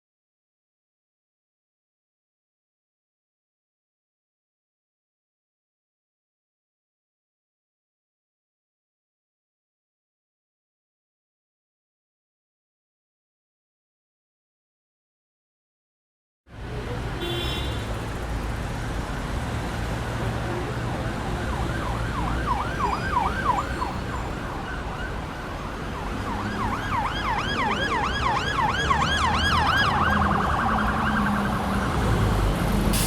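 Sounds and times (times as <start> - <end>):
siren yelping: 21.3 - 32.1.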